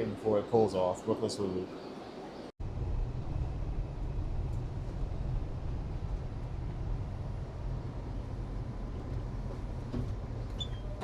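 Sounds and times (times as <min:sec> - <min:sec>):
subway train rumble: 0:02.6 - 0:11.0.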